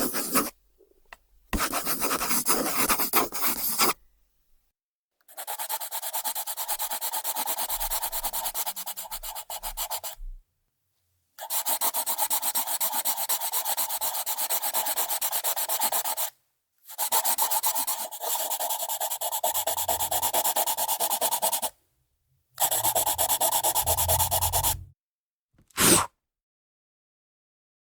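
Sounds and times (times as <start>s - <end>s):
pencil scratching on paper: 0.0s - 0.6s, 1.6s - 4.0s, 5.3s - 10.2s, 11.4s - 16.3s, 16.9s - 21.8s, 22.6s - 24.9s, 25.7s - 26.1s.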